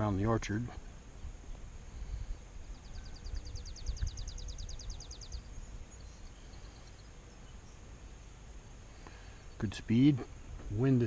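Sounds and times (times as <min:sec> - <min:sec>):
wind rumble on microphone: 0:00.0 - 0:06.2
bird trilling: 0:02.7 - 0:07.8.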